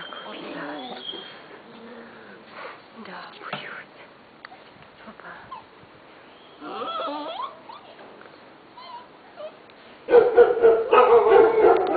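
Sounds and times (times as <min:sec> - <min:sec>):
puppies squealing and whimpering: 0:00.0 - 0:01.5, 0:06.5 - 0:08.0, 0:08.7 - 0:09.6
puppy crying howl: 0:06.6 - 0:08.0.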